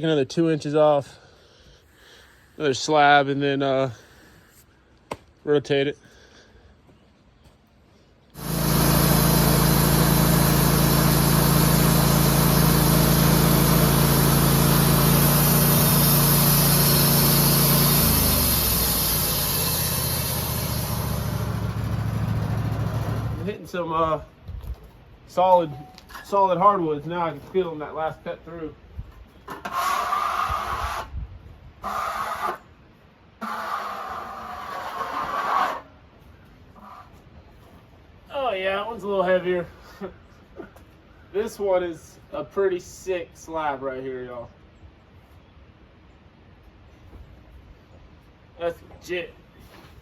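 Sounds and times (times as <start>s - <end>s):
band blade sawing log: 8.4s - 23.5s, 29.5s - 31.1s, 31.8s - 32.6s, 33.4s - 35.9s
band sawmill engine running: 8.4s - 23.6s.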